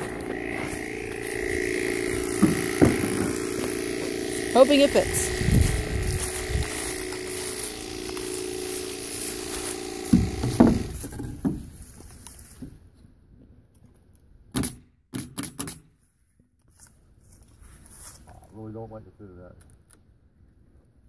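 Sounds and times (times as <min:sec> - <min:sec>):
steady mechanical hum: 0:00.0 - 0:12.6
wooden board knocking: 0:10.1 - 0:11.7.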